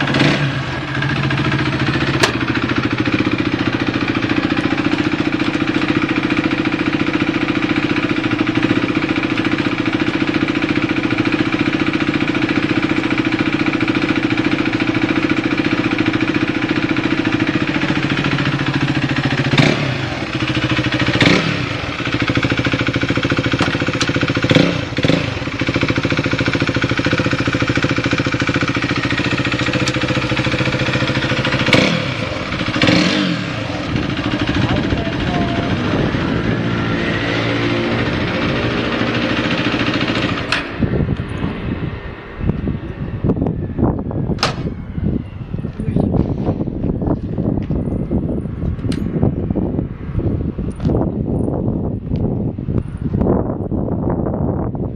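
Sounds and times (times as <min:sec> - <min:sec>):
engine throttle blips: 0:00.0 - 0:54.3
motorcycle engine idling: 0:00.0 - 0:54.9.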